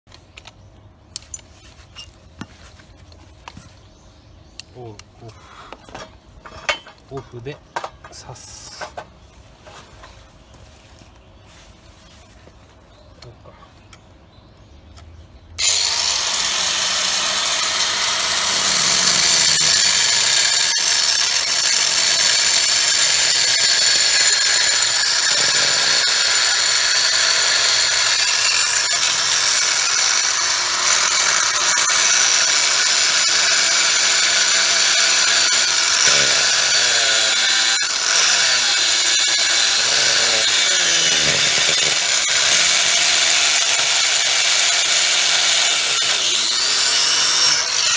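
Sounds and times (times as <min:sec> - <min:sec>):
power tool hissing: 0:15.6 - 0:47.9.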